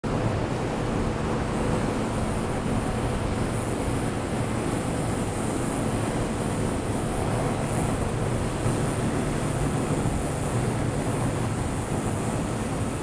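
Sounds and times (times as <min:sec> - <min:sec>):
strong wind on microphone: 0:00.0 - 0:13.0.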